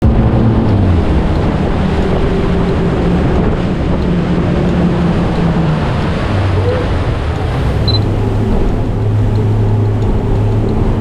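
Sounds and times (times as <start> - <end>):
boat engine running: 0.0 - 11.0.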